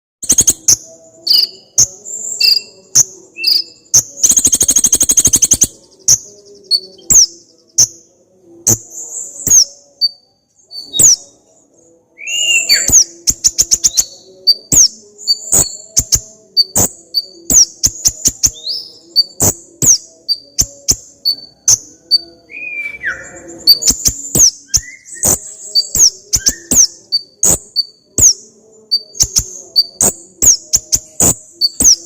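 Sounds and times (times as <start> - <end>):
sunbird singing: 0.2 - 32.0.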